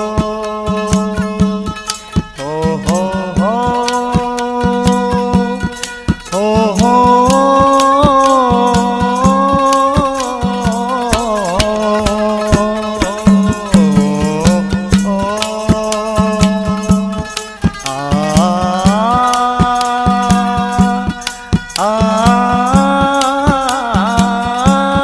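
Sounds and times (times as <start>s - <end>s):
quick drum beat: 0.0s - 25.0s
sliding melody instrument: 0.0s - 25.0s.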